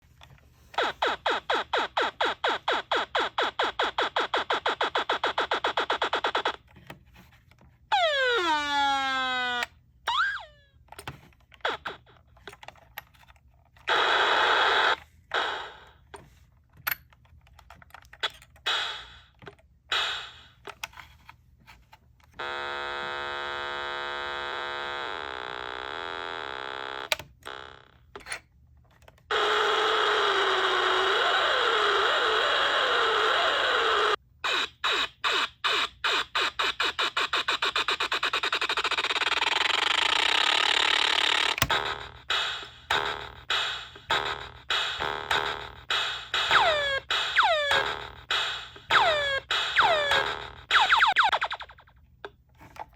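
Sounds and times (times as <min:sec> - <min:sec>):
steady buzzy tone: 0:41.2 - 0:52.0.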